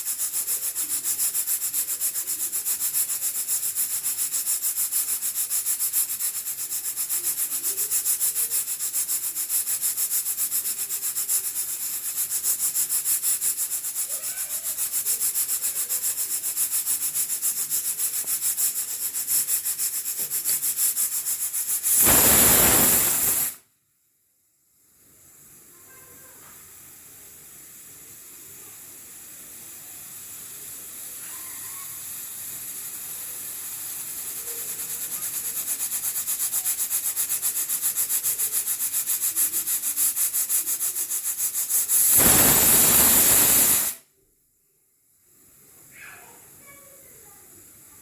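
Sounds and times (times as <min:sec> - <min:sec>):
pressure cooker valve hissing: 0:00.0 - 0:23.6, 0:25.2 - 0:44.0
pressure cooker whistle: 0:21.8 - 0:23.6, 0:41.9 - 0:44.0.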